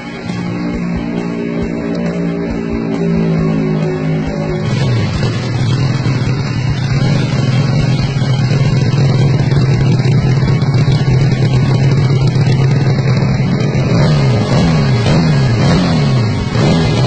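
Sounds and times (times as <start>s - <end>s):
motorcycle engine running: 0.0s - 17.0s.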